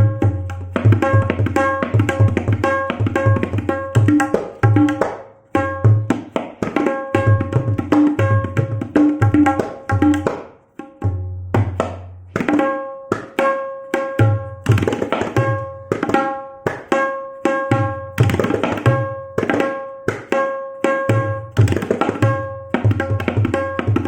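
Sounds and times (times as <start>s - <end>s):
sharp ringing tabla strokes: 0.0s - 10.4s.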